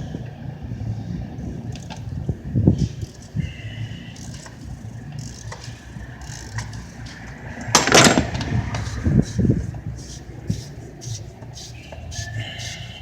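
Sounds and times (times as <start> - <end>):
low steady rumble: 0.0 - 13.0
tool handling noises: 7.6 - 12.9
loud clatter: 7.8 - 8.6.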